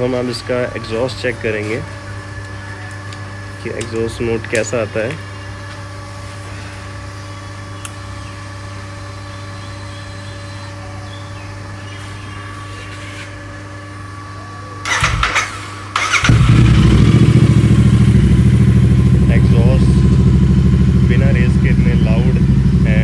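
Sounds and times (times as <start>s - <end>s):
motorcycle engine idling: 14.9s - 23.0s
starter cranking: 14.9s - 23.0s
low hum: 16.3s - 23.0s.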